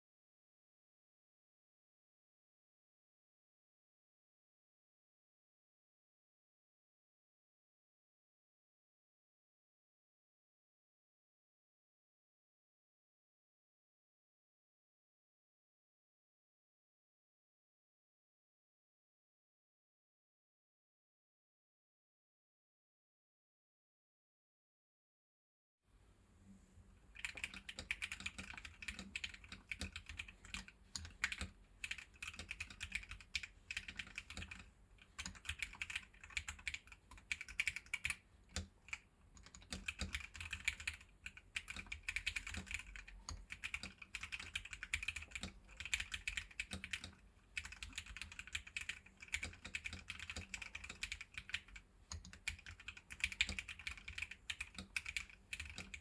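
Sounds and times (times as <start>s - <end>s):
mechanical keyboard typing: 27.2s - 56.0s.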